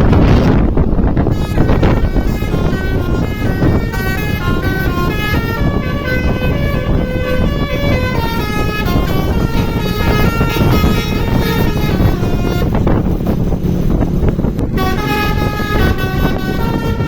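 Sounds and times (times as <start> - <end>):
loud low rumble: 0.0 - 17.0
bus musical horn tune: 0.1 - 17.0.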